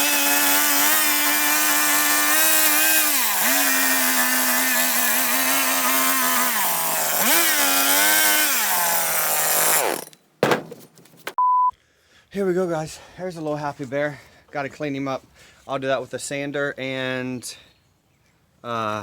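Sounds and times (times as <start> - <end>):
chainsaw cutting wood: 0.0 - 10.7.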